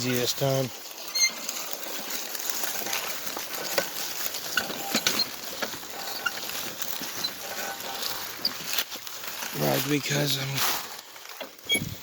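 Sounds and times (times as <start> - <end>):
plastic wheels rolling on gravel: 0.0 - 12.0.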